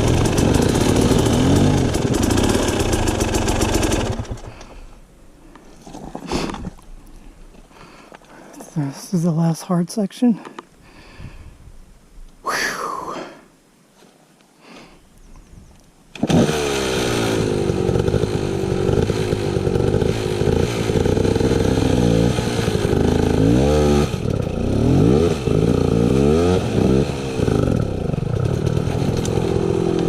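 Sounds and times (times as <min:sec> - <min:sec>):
dirt bike engine revving: 0:00.0 - 0:04.6, 0:16.2 - 0:30.0.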